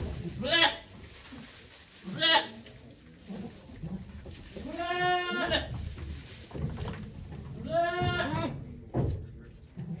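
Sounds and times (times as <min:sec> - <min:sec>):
goat bleating: 0:00.4 - 0:00.9, 0:04.6 - 0:05.7, 0:07.6 - 0:08.5.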